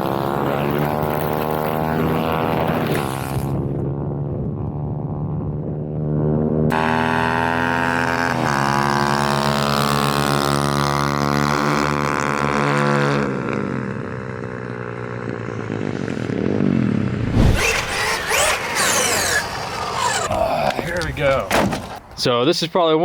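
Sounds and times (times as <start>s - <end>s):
small motorcycle engine revving: 0.0s - 20.6s
rushing noise with whines: 16.9s - 19.6s.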